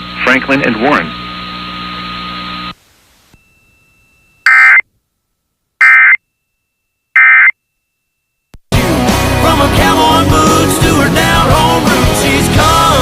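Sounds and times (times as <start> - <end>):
steady hiss and hum: 0.0 - 5.8.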